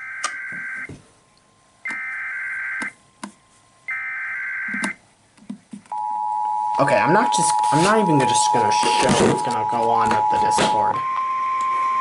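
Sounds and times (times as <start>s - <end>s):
warbling data tones: 6.7s - 11.3s.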